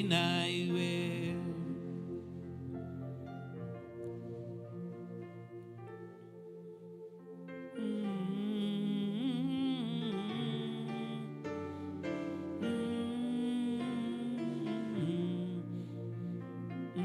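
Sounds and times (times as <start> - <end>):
person humming held notes: 12.6 - 16.1.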